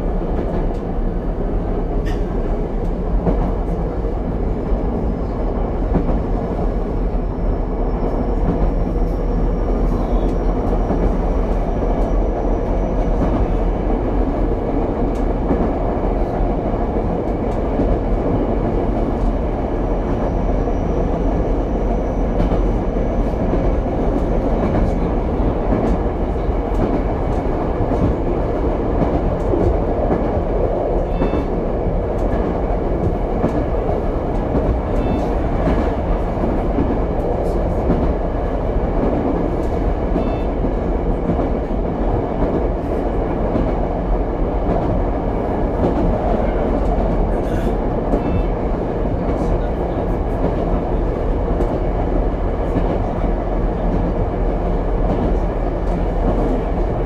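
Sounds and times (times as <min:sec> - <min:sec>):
train wheels rumbling on rail: 0:00.0 - 0:57.0
rail-joint clicks: 0:00.3 - 0:01.0, 0:01.9 - 0:04.0, 0:15.0 - 0:20.3, 0:22.2 - 0:45.0, 0:45.6 - 0:51.9.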